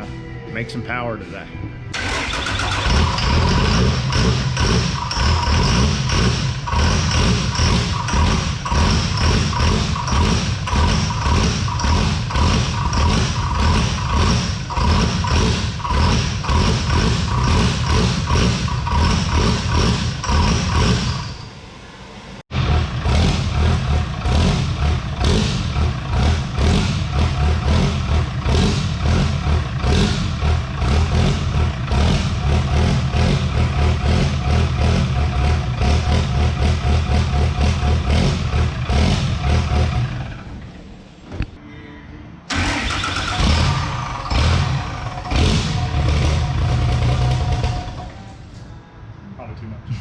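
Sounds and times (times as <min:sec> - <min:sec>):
diesel truck engine running loud: 0:01.9 - 0:41.2, 0:42.5 - 0:48.6.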